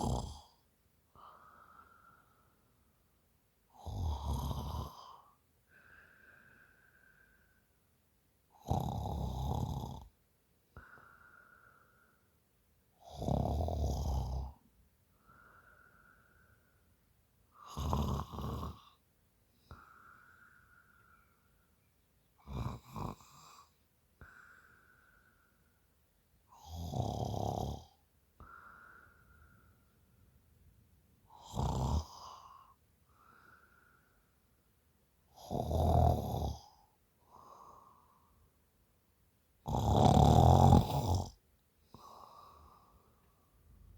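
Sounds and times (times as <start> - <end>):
woman snoring: 0.0 - 0.6, 3.8 - 5.3, 8.6 - 10.1, 13.0 - 14.6, 17.6 - 18.9, 22.4 - 24.4, 26.5 - 28.8, 31.3 - 32.8, 35.4 - 36.8, 39.6 - 42.8
soft breath out: 1.1 - 3.0, 5.1 - 7.8, 10.7 - 12.4, 15.1 - 17.6, 19.5 - 22.4, 23.5 - 25.9, 28.4 - 30.3, 32.2 - 34.5, 41.8 - 43.9
faint whistling breath: 19.5 - 22.4.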